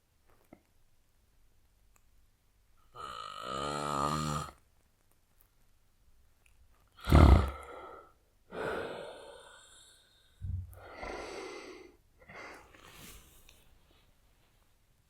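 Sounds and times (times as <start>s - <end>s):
man snoring: 2.9s - 4.6s, 7.0s - 8.0s
noisy breaths: 7.2s - 14.1s.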